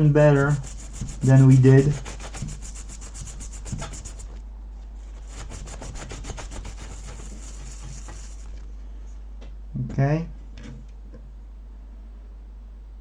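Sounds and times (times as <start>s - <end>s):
brush scrubbing circuit board: 0.2s - 4.4s, 5.0s - 8.7s.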